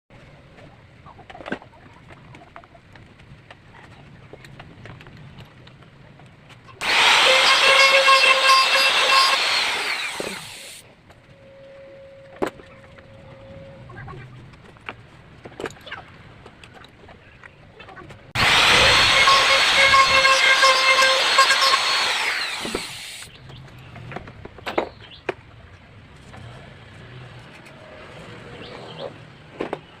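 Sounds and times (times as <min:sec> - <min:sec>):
power tool whining: 0:06.8 - 0:10.8, 0:18.4 - 0:23.3.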